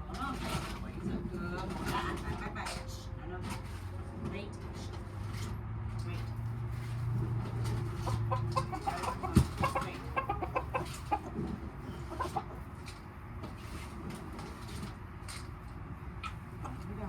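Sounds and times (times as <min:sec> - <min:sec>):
chickens clucking: 0:07.2 - 0:14.8.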